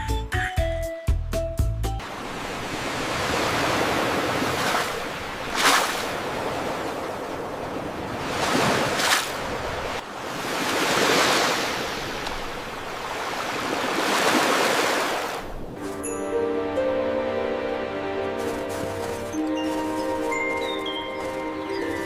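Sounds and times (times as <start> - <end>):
ocean waves washing in: 2.0 - 22.0
chiming music: 15.8 - 22.0.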